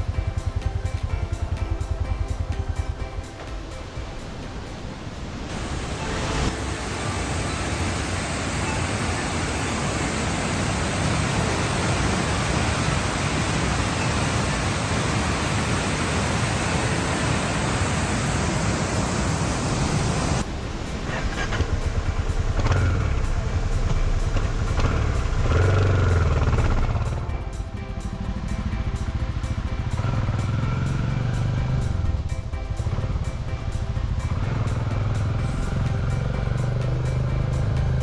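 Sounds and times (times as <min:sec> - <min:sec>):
waterfall roaring: 0:00.0 - 0:27.3.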